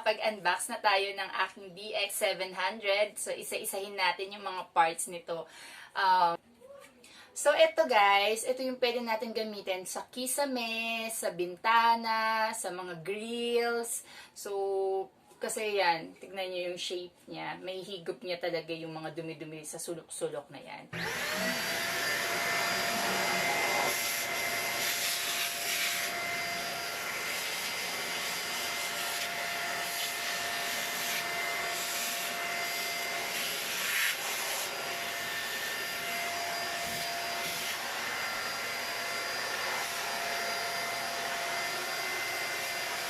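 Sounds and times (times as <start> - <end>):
vacuum cleaner whining: 21.0 - 43.0.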